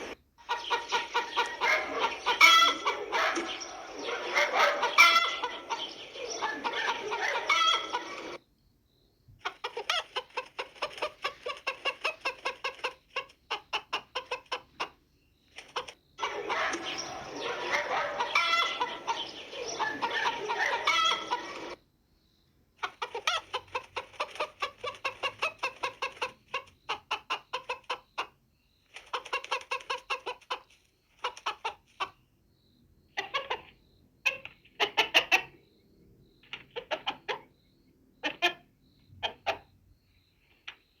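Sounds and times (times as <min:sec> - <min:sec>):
hens clucking and squawking: 0:00.0 - 0:08.4, 0:09.4 - 0:21.8, 0:22.8 - 0:32.2, 0:33.1 - 0:35.6, 0:36.4 - 0:37.6, 0:38.2 - 0:39.7.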